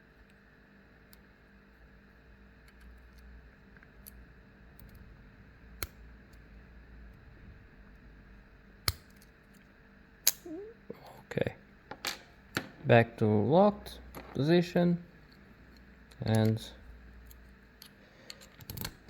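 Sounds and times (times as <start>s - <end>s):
lock picking clicks: 10.2s - 10.5s, 15.7s - 16.6s, 17.2s - 19.0s.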